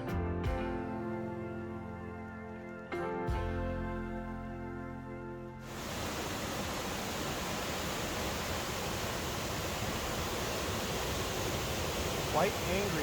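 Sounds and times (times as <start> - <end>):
background music: 0.0 - 5.7
river rushing: 5.7 - 13.0.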